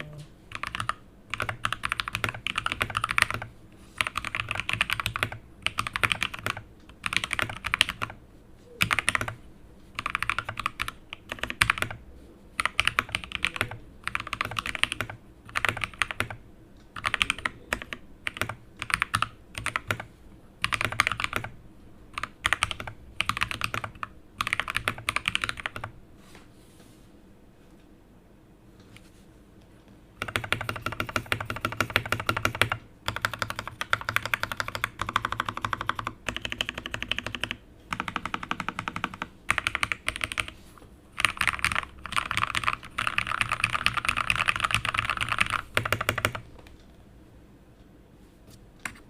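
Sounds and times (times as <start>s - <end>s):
mechanical keyboard typing: 0.5s - 8.2s, 8.8s - 9.4s, 10.0s - 12.0s, 12.6s - 16.4s, 17.0s - 21.5s, 22.2s - 25.9s, 30.2s - 40.6s, 41.2s - 46.4s.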